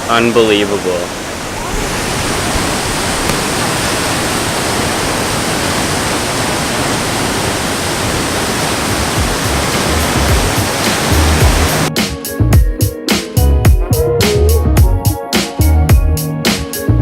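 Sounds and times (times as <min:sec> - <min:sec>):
waterfall rushing: 0:00.0 - 0:11.9
music with low beat: 0:09.2 - 0:17.0.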